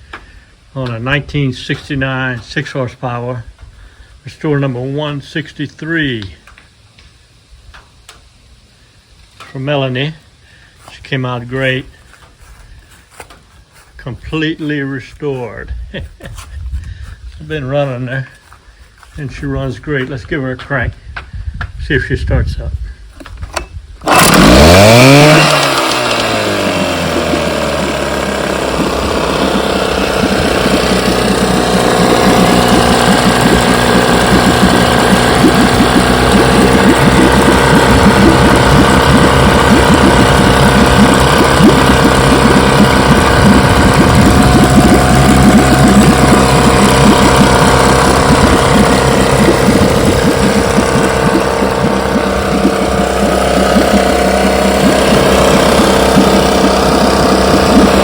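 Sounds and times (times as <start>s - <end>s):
outboard motor starting and running: 9.5s - 19.7s, 23.2s - 58.0s.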